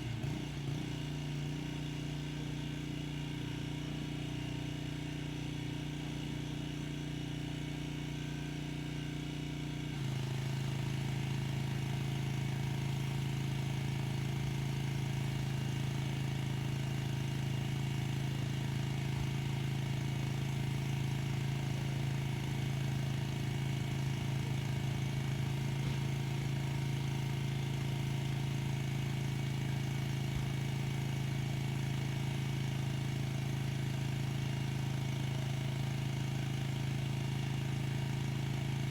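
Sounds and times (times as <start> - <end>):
pressure washer engine running: 10.0 - 38.9.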